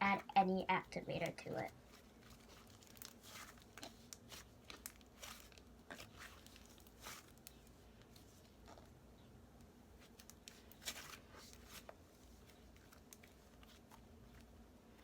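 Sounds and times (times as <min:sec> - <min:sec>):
slime crackling: 0:01.2 - 0:08.9
slime squishing: 0:01.6 - 0:09.0, 0:09.9 - 0:14.4.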